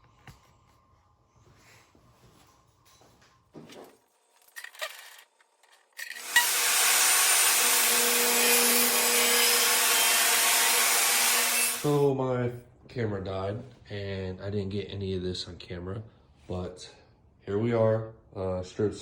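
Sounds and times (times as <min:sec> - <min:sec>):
table saw running: 0:06.0 - 0:11.9.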